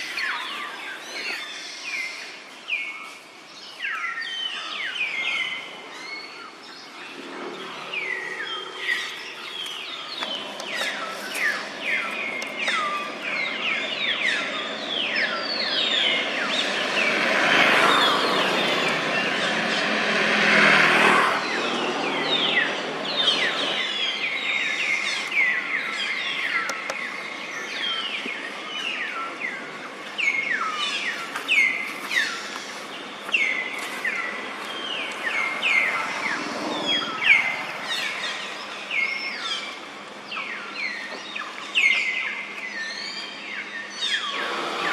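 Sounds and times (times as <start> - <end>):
birds chirping: 0.0 - 44.9
loud rushing noise: 15.9 - 23.9, 44.3 - 44.9.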